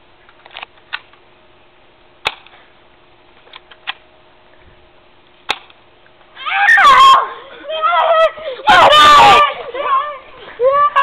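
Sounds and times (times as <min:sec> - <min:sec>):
airsoft gun snaps: 0:02.2 - 0:02.6, 0:05.5 - 0:05.8.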